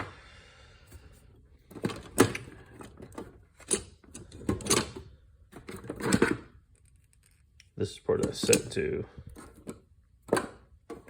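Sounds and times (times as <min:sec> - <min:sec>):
pliers clacking in metal drawer: 0:01.7 - 0:05.0.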